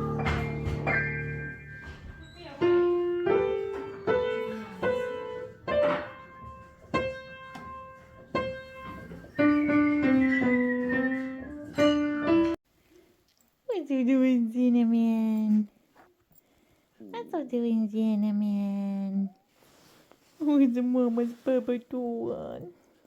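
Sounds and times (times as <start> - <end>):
slow piano melody: 0.0 - 12.6.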